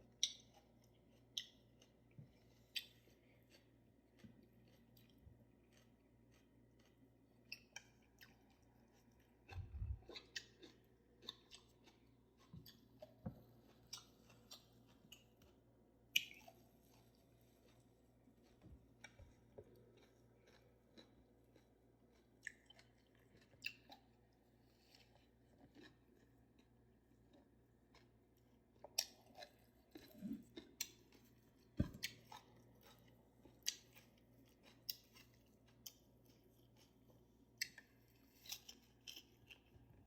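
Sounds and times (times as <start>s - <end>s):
open-mouthed chewing: 0.0s - 40.0s.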